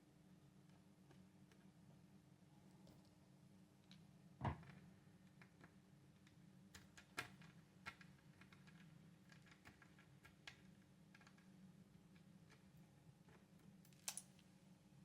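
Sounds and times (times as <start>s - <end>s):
knock: 4.4s - 4.6s.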